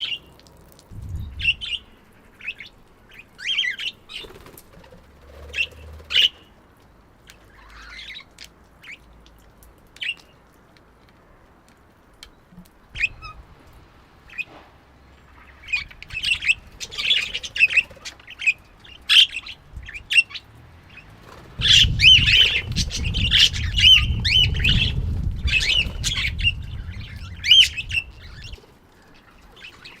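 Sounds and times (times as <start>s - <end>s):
low rumble: 0.9s - 2.2s.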